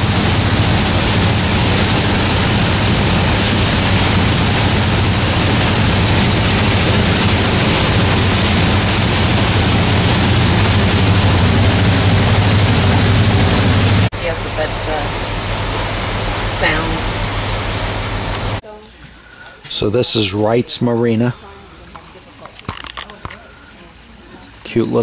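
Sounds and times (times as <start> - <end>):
rush of wind and water: 0.0 - 18.6
boat engine drone: 0.0 - 25.0.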